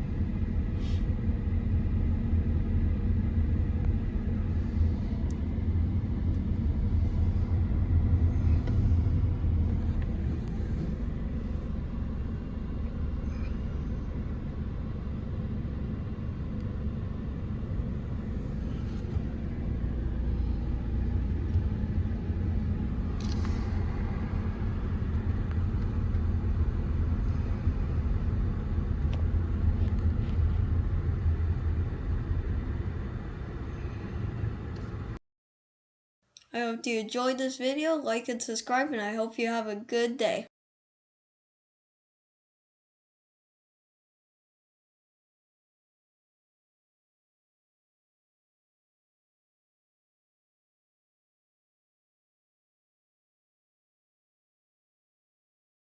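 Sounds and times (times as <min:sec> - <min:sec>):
road and engine noise inside vehicle: 0:00.0 - 0:35.2.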